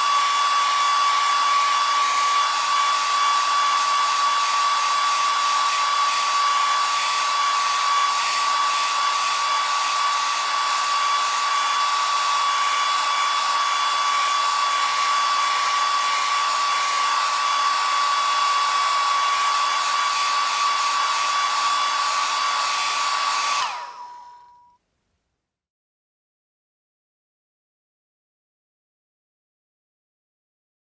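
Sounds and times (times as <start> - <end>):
electric shaver buzzing: 0.0 - 24.8.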